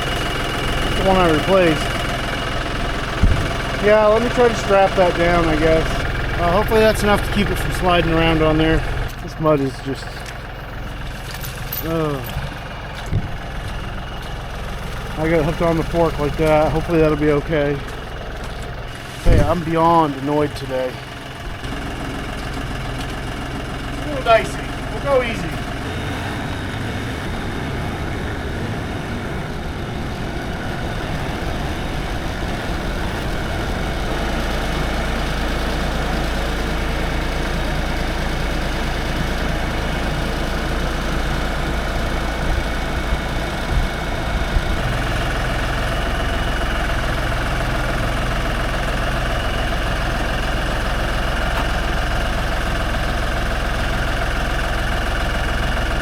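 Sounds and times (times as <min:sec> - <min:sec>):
tractor engine running: 0:00.0 - 0:56.0
knocks: 0:03.2 - 0:03.6.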